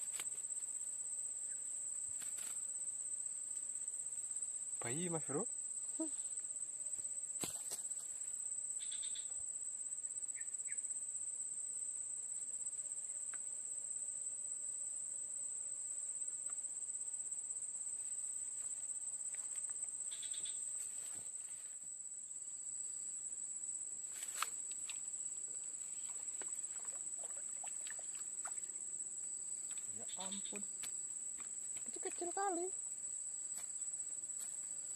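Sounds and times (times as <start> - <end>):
insect chorus drone: 0.0 - 34.9.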